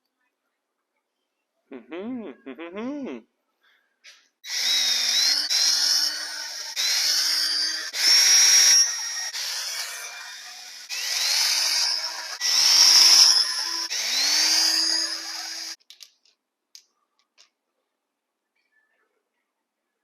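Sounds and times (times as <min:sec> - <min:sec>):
cordless power driver whine: 0:04.5 - 0:15.8.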